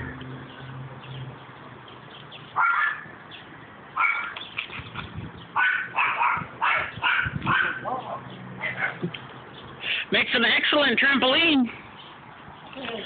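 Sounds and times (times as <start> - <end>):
dog barking: 2.6 - 3.1, 4.0 - 4.4, 5.6 - 9.0.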